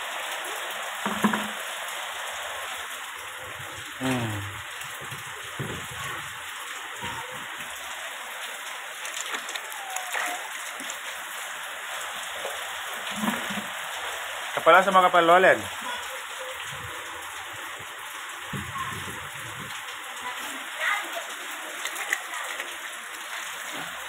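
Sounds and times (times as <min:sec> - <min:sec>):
water running and splashing: 0:00.0 - 0:24.0
plastic moulds knocking: 0:01.1 - 0:01.6.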